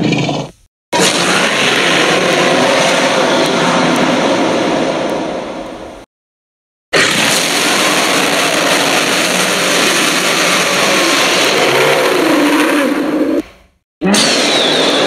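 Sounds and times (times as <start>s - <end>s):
monster roar: 1.0s - 5.0s, 7.0s - 13.4s.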